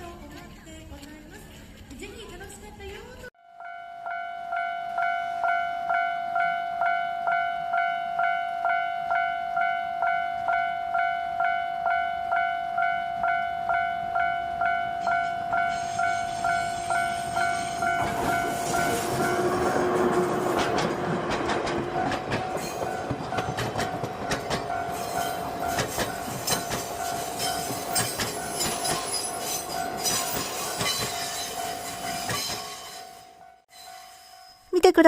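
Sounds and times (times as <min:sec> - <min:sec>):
level crossing warning bell: 0:03.4 - 0:34.9
train wheels clattering over rails: 0:15.7 - 0:33.4.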